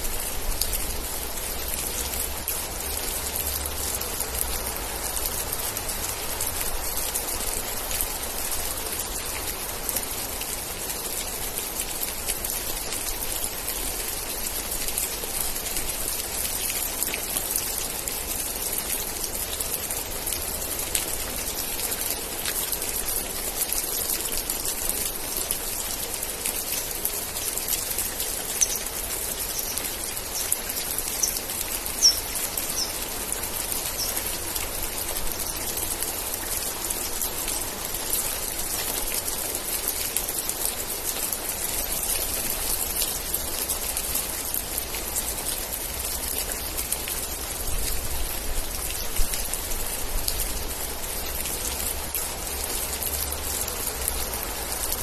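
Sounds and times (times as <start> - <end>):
steady rain pattering: 0.0 - 55.0.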